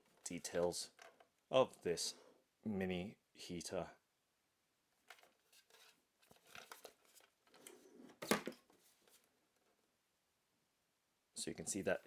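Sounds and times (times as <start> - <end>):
plastic heater handling rustles: 5.1 - 9.2.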